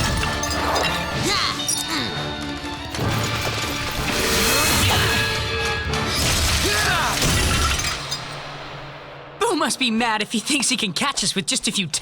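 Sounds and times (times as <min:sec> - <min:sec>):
cartoon soundtrack music: 0:00.0 - 0:07.5
crashing and shattering effects: 0:02.6 - 0:09.1.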